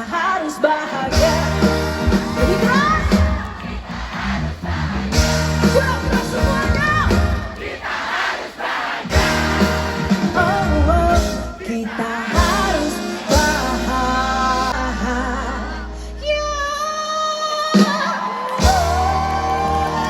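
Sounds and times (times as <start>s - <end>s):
person singing: 0.0s - 3.4s, 9.4s - 20.0s
live pop band music: 0.0s - 7.8s, 9.0s - 20.0s.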